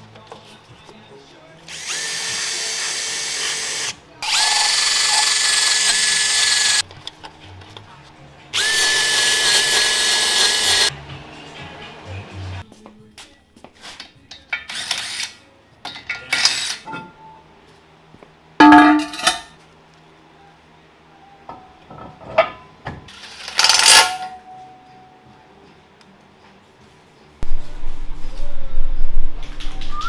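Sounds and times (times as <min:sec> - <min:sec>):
faint background music: 0:00.0 - 0:30.0
sharp metal clanks: 0:18.6 - 0:19.5
rustling and scraping: 0:27.4 - 0:30.0.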